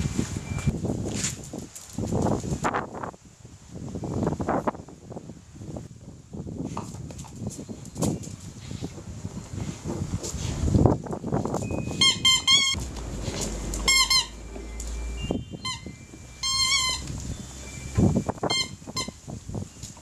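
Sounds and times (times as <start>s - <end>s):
scuffling and thumps: 6.7s - 18.5s
high-pitched squeals: 11.6s - 19.3s.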